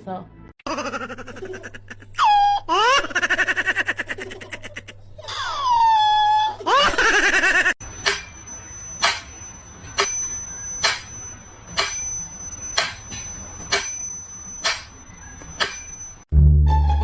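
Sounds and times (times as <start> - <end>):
small bell ringing: 7.8 - 16.3.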